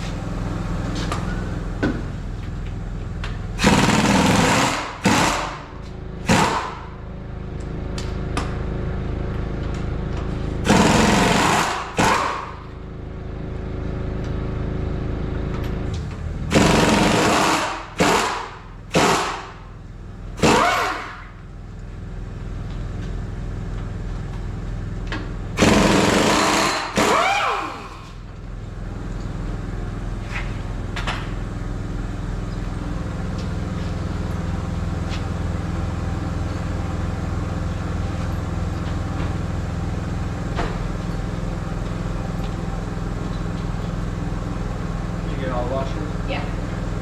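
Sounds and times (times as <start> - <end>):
power tool bursts: 3.6 - 6.8, 10.7 - 12.6, 16.5 - 19.6, 20.4 - 21.3, 25.6 - 28.2.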